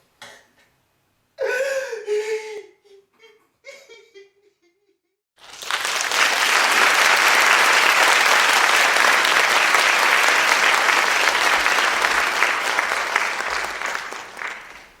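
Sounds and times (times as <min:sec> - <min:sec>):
crowd clapping: 0:05.4 - 0:15.0.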